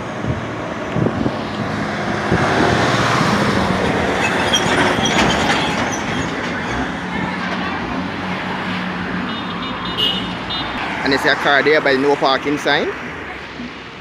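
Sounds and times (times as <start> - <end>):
vehicle passing close by: 0.0 - 5.0.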